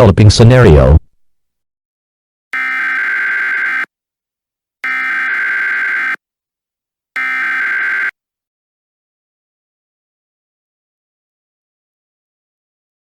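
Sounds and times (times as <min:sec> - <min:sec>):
buzzing digital data tones: 0:02.6 - 0:03.9, 0:04.8 - 0:06.2, 0:07.2 - 0:08.1.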